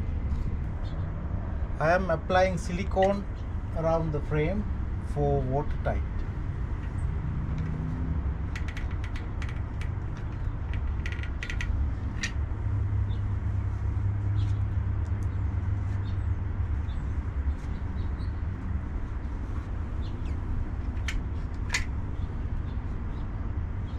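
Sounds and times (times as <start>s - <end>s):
steady low rumble: 0.0s - 23.9s
caulking gun clicks and creaks: 6.7s - 7.8s, 8.4s - 12.4s, 20.8s - 22.0s.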